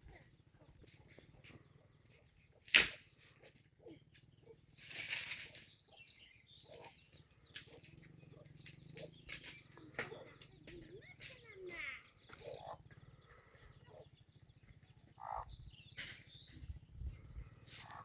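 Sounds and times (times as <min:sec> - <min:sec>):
rustling crunch: 0:04.8 - 0:05.8, 0:17.5 - 0:18.0.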